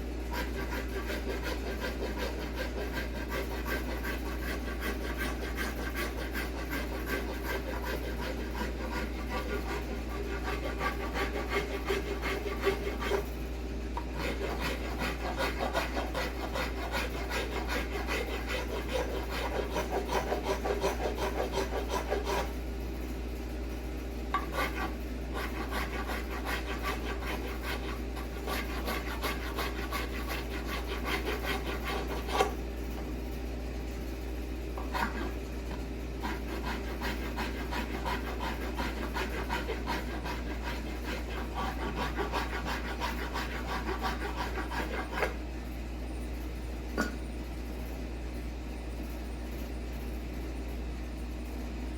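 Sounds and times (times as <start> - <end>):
hand tool rasping wood: 0.3 - 13.3, 14.0 - 22.5, 24.4 - 32.6, 34.8 - 45.4.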